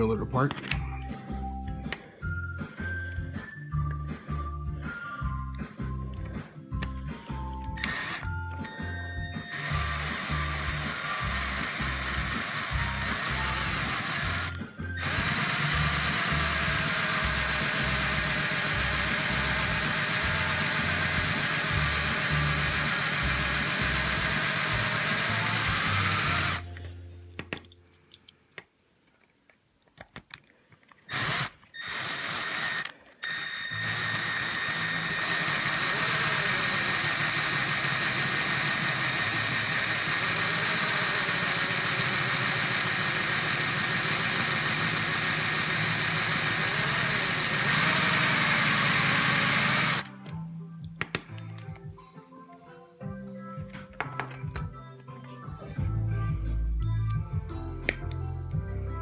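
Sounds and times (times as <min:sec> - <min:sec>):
background music with a beat: 0:00.8 - 0:09.8, 0:50.1 - 0:59.0
small power drill running: 0:07.7 - 0:26.7, 0:31.1 - 0:50.1.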